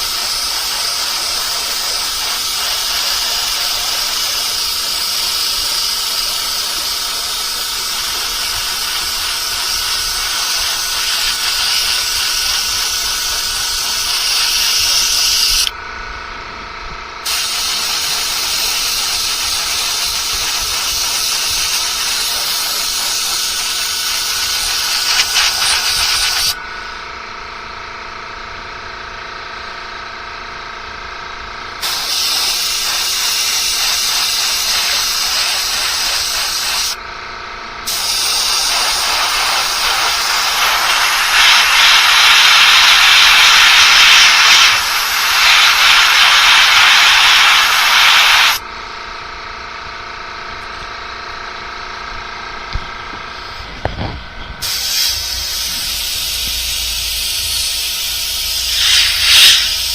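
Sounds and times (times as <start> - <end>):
airbrush spraying hiss: 0.0 - 15.7, 17.2 - 26.6, 31.8 - 37.0, 37.9 - 48.6, 54.6 - 59.9
faint machine hum: 0.0 - 59.9.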